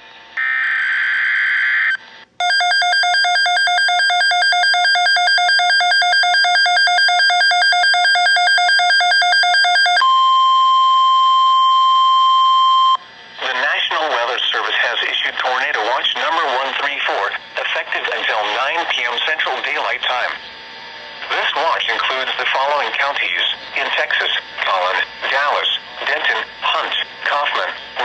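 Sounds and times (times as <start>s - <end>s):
rapidly pulsing buzzy beep: 2.4s - 13.0s
steady single-pitch alert tone: 2.4s - 13.0s.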